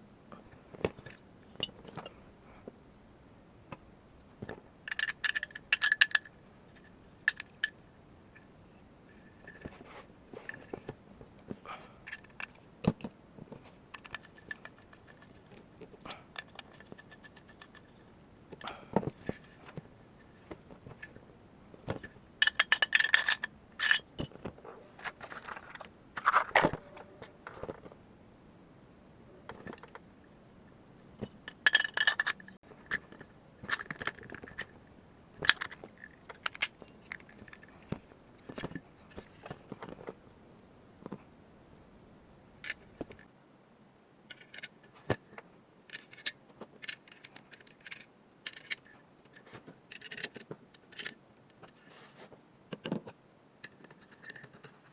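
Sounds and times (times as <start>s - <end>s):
metal gun parts clicking: 4.9s - 7.8s, 22.4s - 24.3s, 31.5s - 34.7s, 45.9s - 51.2s.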